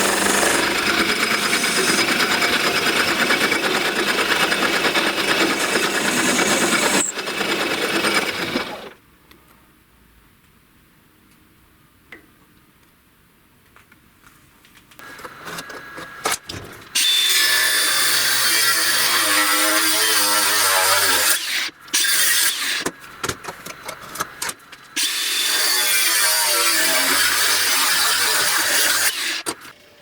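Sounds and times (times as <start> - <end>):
power tool running: 0.0 - 9.0.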